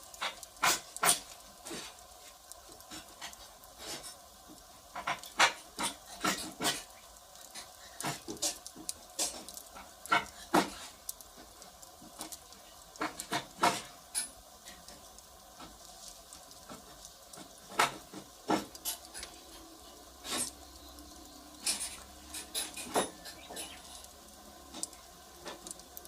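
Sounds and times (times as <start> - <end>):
wood fire crackling and popping: 0.0 - 26.0.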